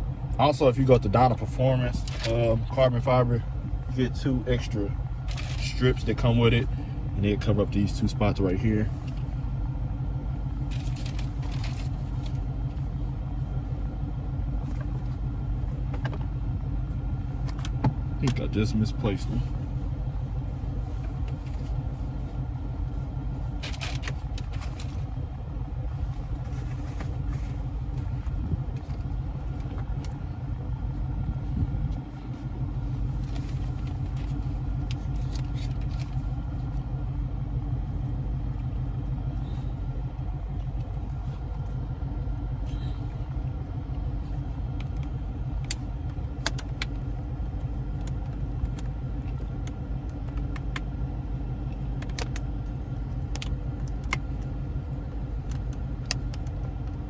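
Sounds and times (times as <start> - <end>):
car cabin rumble: 0.0 - 57.0
clicks and rustles of trim: 10.7 - 12.5, 23.6 - 25.2, 31.9 - 36.9, 51.7 - 54.5.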